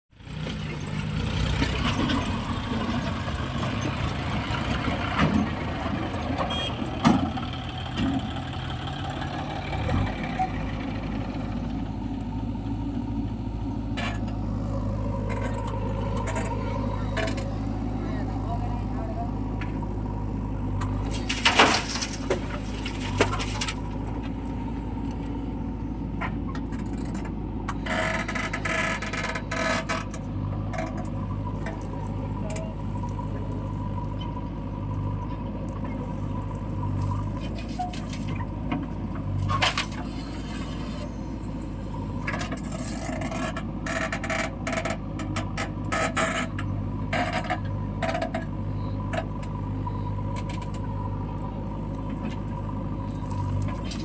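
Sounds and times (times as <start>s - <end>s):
diesel engine running: 0.1s - 54.0s
bucket scraping: 20.9s - 24.0s.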